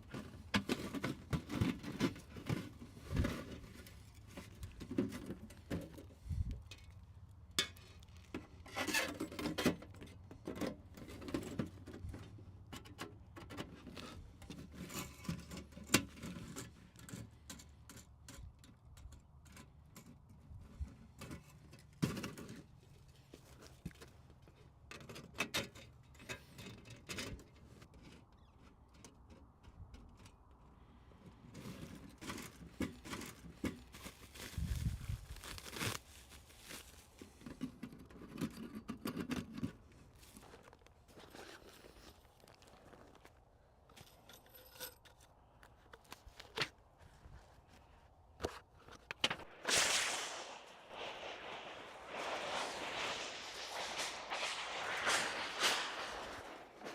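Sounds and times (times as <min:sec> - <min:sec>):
camping gear rustling: 0:40.2 - 0:43.3.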